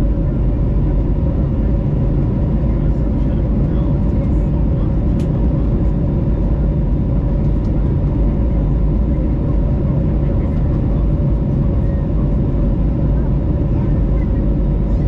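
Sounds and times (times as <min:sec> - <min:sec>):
jet engine cabin rumble: 0:00.0 - 0:15.0.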